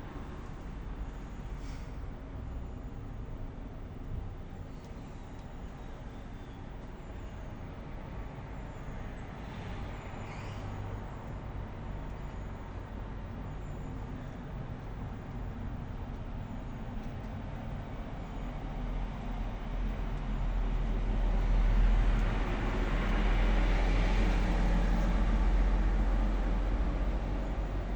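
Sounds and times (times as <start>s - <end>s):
road traffic rumble: 0.0s - 27.9s
vehicle approaching: 8.1s - 27.9s.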